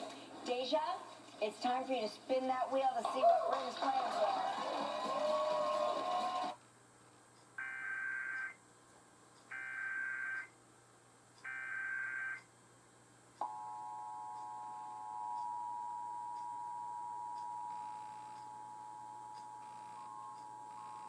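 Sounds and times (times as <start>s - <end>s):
television speech: 0.0s - 6.6s.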